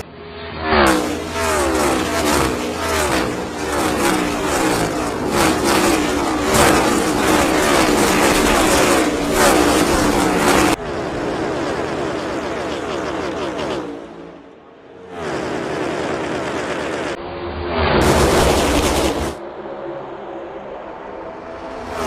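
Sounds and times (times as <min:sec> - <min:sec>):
race car engines at speed: 0:00.0 - 0:22.0.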